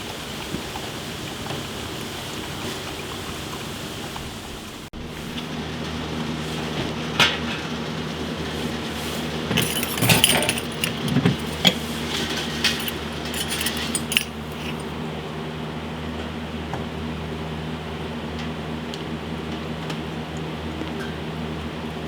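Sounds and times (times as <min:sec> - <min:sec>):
glass bottles clinking: 0:09.5 - 0:14.9.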